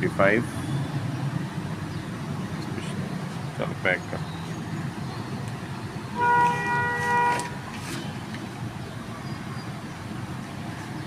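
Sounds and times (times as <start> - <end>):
horn blast: 6.2 - 7.7.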